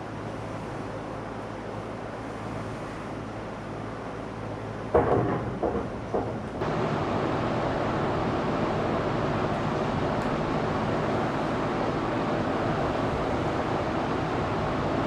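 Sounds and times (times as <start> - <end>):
engine running: 6.1 - 15.0.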